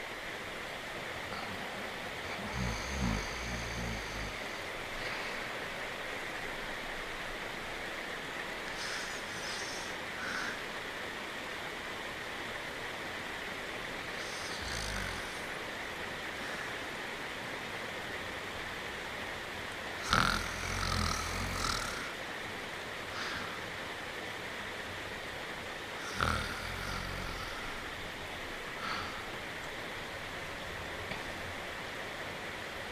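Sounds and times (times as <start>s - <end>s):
steady rain hiss: 0.0s - 32.9s
cartoon dog snoring: 2.3s - 4.6s, 8.7s - 10.6s, 14.2s - 15.5s, 20.0s - 22.1s, 26.0s - 27.8s.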